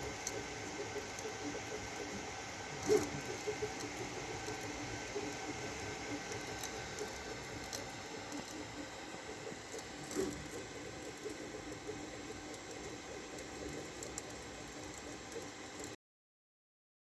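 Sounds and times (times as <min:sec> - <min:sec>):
printer stepper motors whirring: 0:00.0 - 0:16.0.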